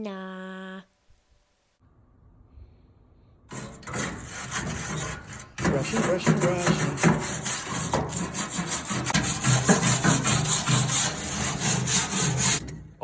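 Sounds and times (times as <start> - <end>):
brush scrubbing sheet metal: 3.5 - 12.9.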